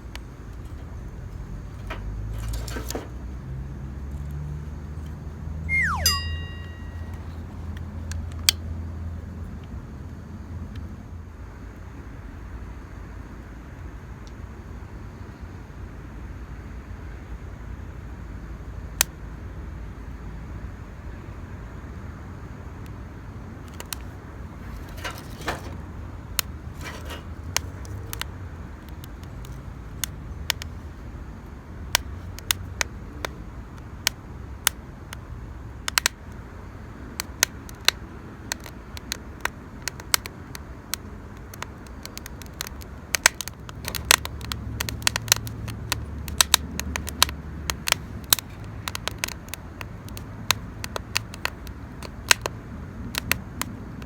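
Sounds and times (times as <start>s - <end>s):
campfire crackling and popping: 31.8s - 36.4s, 37.1s - 54.0s.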